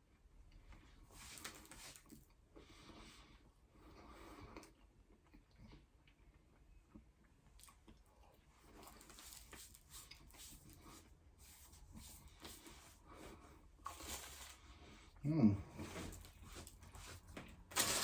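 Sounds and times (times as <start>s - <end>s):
faint chewing of pastry: 0.0s - 17.6s.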